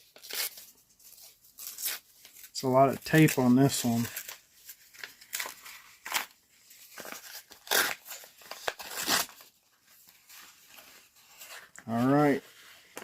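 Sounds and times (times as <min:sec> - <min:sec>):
paper envelope being torn: 0:00.0 - 0:09.5.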